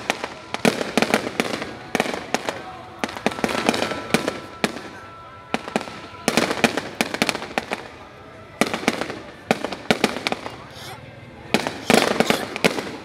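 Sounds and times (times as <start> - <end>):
fireworks bangs and crackles: 0.0 - 10.8, 11.4 - 13.0.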